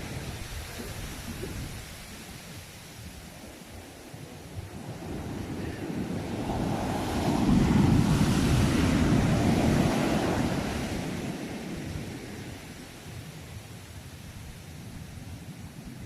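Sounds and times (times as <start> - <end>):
sea wave breaking: 4.7 - 13.0.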